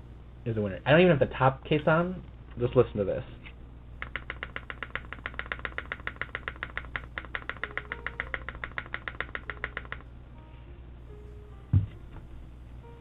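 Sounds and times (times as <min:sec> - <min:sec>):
keyboard spacebar clacking: 0:04.0 - 0:10.0.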